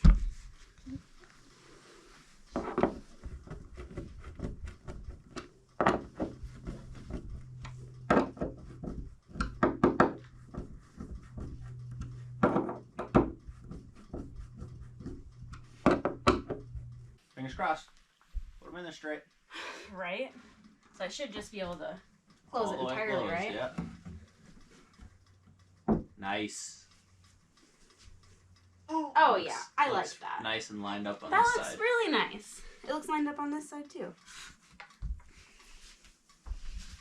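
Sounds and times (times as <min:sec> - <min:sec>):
steady low hum: 0:00.0 - 0:37.0
wooden door knocks and clicks: 0:03.9 - 0:06.4, 0:08.1 - 0:10.8, 0:12.4 - 0:14.4, 0:15.8 - 0:16.6, 0:25.8 - 0:26.2.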